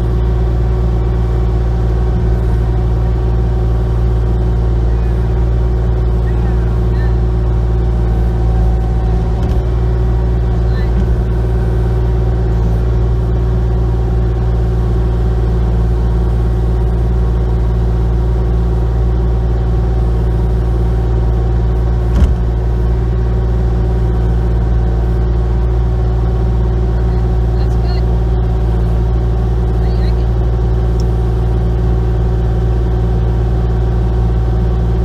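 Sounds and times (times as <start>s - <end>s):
excavator diesel engine running: 0.0s - 35.0s.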